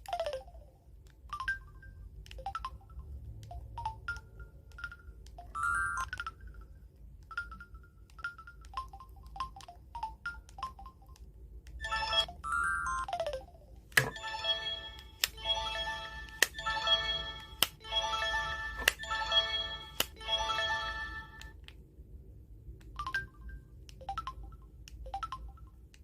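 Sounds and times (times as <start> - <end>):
phone ringtone melody: 0.0 - 11.2, 11.8 - 21.6, 23.0 - 25.8
phone key beeps: 3.8 - 6.4.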